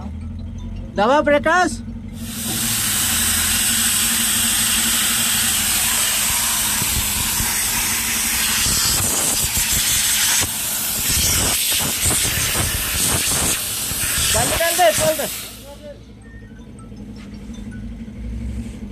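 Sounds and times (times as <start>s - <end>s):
compressed air hissing: 2.2s - 15.9s.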